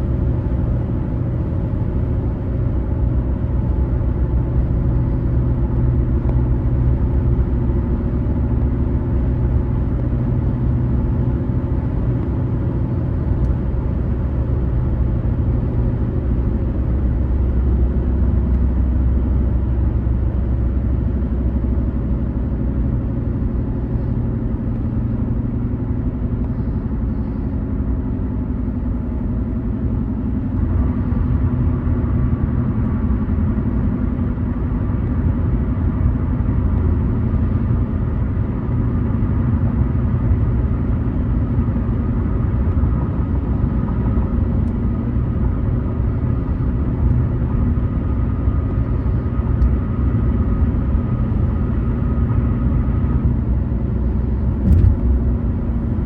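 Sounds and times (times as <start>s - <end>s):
car engine and tyre rumble: 0.0s - 56.0s
faint steady whine: 23.9s - 31.9s.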